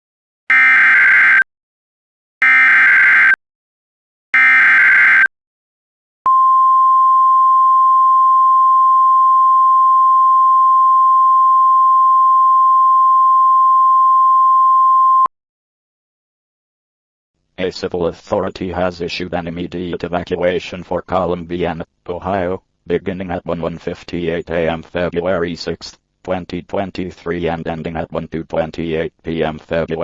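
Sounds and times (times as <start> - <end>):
steady attention tone: 6.3 - 15.3.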